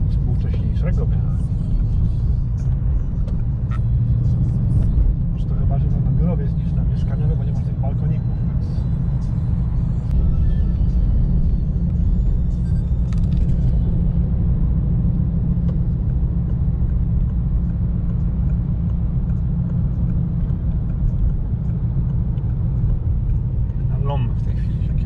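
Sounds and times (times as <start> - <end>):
car engine and tyre noise: 0.0 - 25.0.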